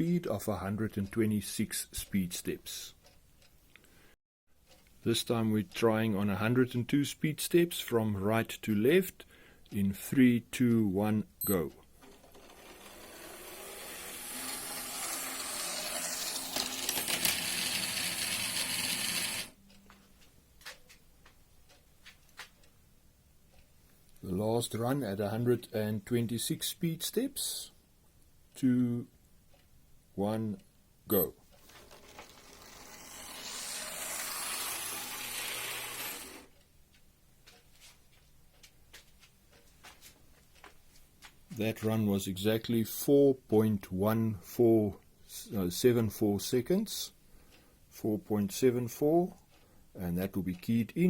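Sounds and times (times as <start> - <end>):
model train running on track: 12.4 - 19.5, 32.1 - 36.5.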